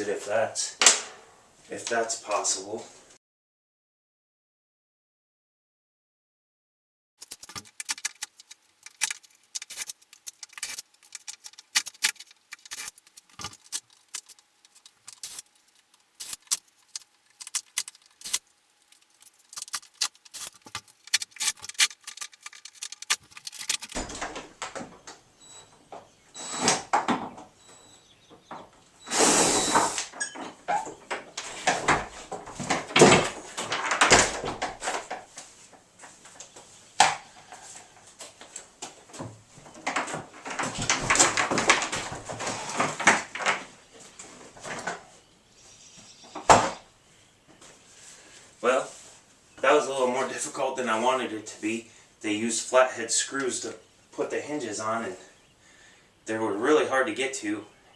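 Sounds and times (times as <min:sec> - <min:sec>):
metallic tool clicks: 0:07.2 - 0:24.0.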